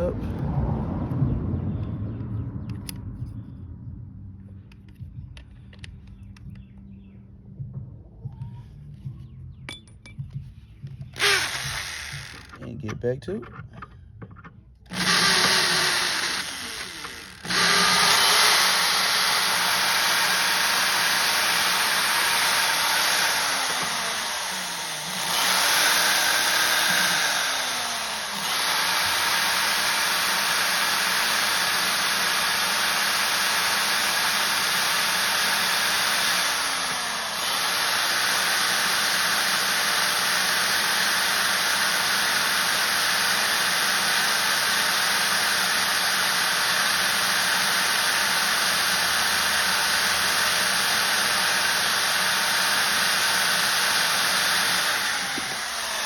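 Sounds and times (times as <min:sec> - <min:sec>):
electric drill whining: 0:11.1 - 0:12.7, 0:14.8 - 0:56.0.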